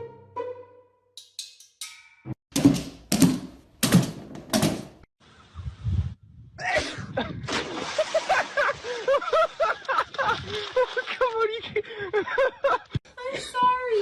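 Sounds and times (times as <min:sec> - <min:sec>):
heavy thuds: 0:02.5 - 0:05.1.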